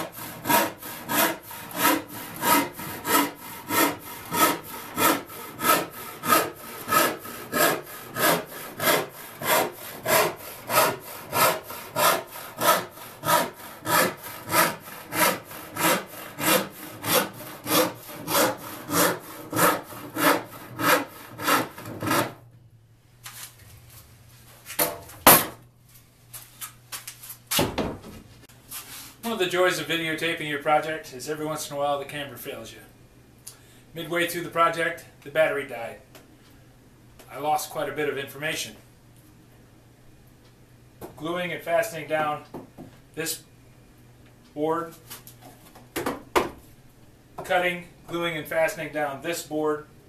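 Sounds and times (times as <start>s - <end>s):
hand saw cutting plywood: 0.0s - 22.4s.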